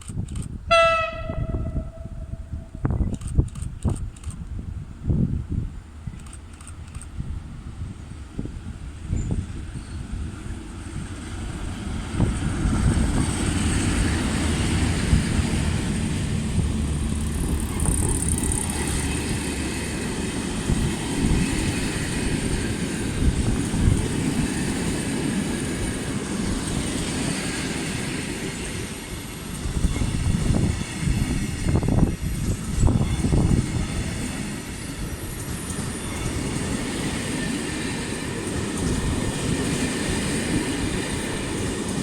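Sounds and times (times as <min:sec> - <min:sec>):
train wheels rumbling on rails: 0:00.0 - 0:42.0
wheels squealing: 0:17.0 - 0:20.2.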